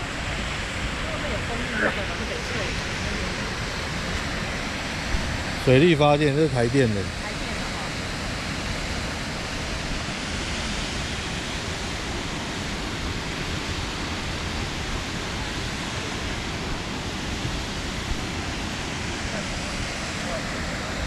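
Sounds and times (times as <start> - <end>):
rushing water: 0.0 - 21.0.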